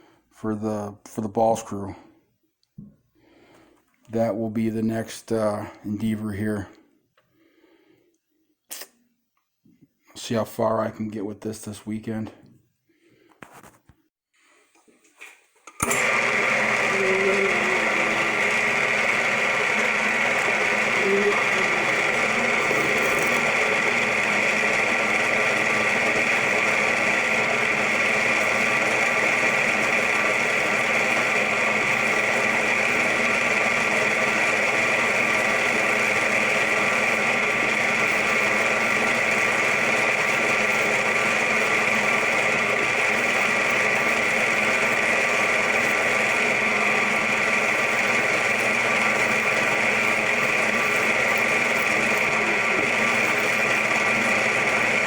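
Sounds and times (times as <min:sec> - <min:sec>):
power tool drilling: 0:15.8 - 0:55.0.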